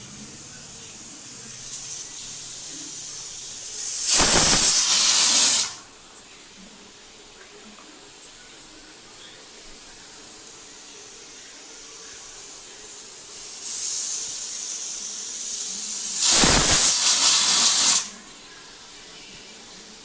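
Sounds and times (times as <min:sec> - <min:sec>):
pressure cooker hissing: 0:00.0 - 0:20.0
pressure cooker whistle blast: 0:04.0 - 0:05.8.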